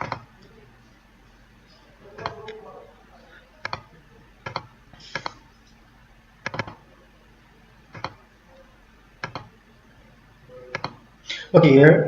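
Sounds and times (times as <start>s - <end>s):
computer mouse clicking: 0.0s - 0.5s, 3.6s - 5.8s, 6.4s - 6.8s, 7.9s - 9.5s, 10.7s - 11.0s
faint room hum: 0.0s - 12.0s.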